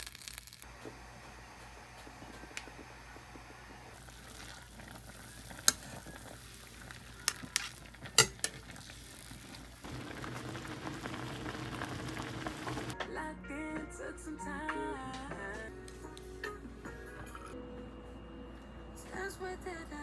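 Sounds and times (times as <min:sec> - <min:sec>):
food sizzling in a pan: 0:00.0 - 0:13.0
utensils clinking: 0:04.0 - 0:11.1.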